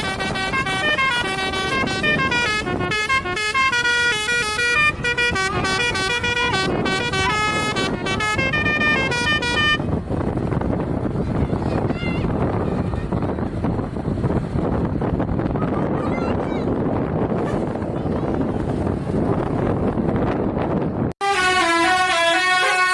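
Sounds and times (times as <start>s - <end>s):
multi-tone air horns melody: 0.0s - 10.0s, 21.2s - 22.9s.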